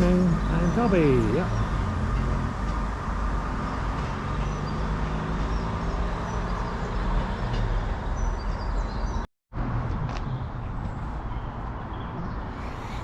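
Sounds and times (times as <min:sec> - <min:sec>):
faint bird chirps: 0:11.3 - 0:13.0.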